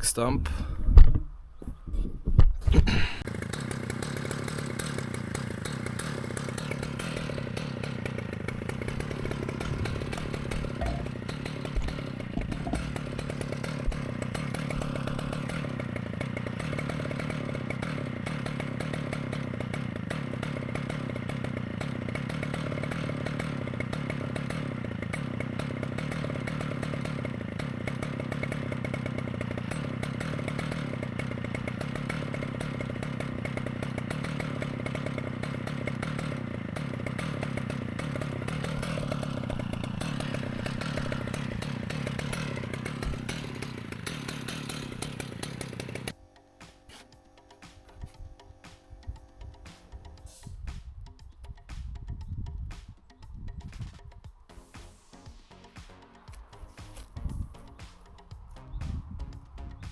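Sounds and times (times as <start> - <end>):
chainsaw cutting wood: 2.6 - 59.9.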